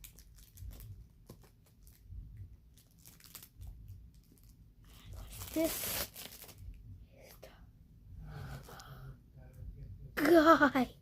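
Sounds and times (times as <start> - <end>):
packaging crinkling and rustling: 0.0 - 2.1, 2.7 - 6.8.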